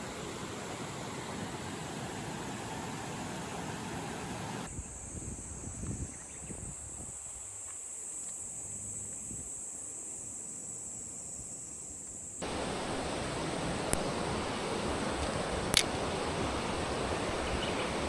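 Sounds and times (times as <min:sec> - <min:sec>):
stream water rushing: 0:00.0 - 0:04.7, 0:12.4 - 0:18.0
sharp click: 0:15.2 - 0:16.0.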